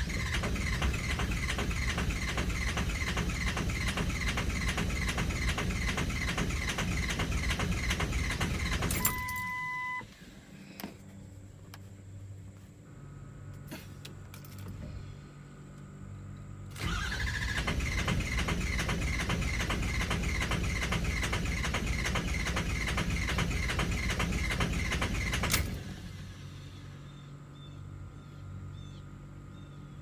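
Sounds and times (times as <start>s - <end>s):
engine cranking on starter: 0.0s - 10.1s, 16.7s - 27.2s.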